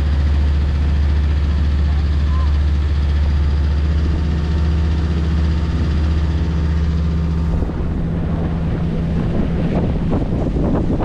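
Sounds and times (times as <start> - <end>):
boat engine humming: 0.0 - 11.0
water rushing past hull: 0.0 - 11.0
wind buffeting microphone: 3.0 - 11.0.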